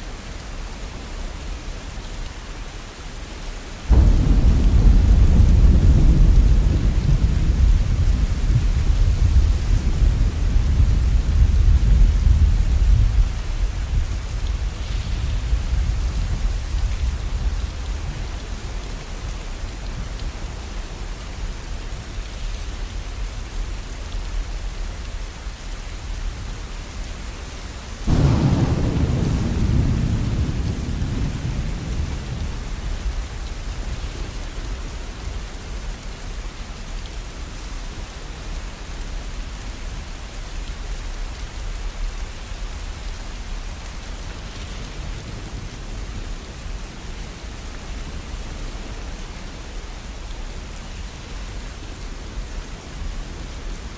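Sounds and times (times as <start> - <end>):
steady rain: 0.0 - 53.9
thunder clap rumbling: 3.9 - 18.7, 28.1 - 33.7.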